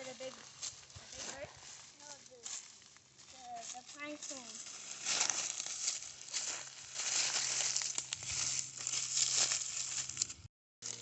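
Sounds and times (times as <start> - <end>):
footsteps crunching dry leaves: 0.0 - 11.0.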